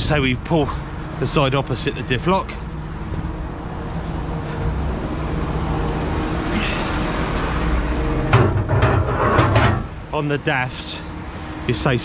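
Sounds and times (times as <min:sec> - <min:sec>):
diesel engine idling: 0:00.0 - 0:08.4.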